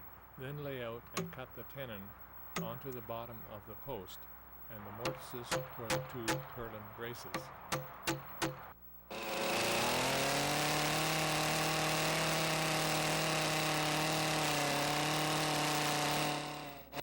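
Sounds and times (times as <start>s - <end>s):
power tool motor spinning: 7.8s - 17.0s.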